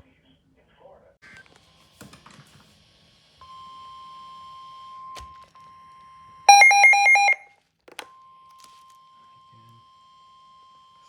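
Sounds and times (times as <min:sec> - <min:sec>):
rapid two-pitch beeping alarm: 0:06.5 - 0:07.4
steady alert tone: 0:06.5 - 0:07.4.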